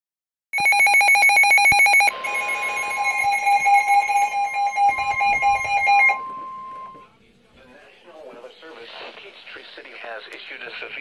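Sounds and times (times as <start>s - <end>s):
steady warning tone: 1.6s - 7.1s.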